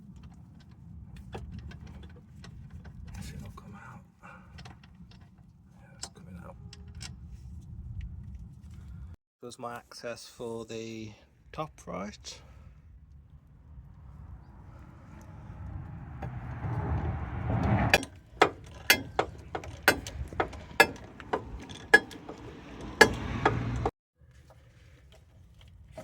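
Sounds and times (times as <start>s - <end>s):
ratchet scraping and grinding: 14.7s - 23.9s.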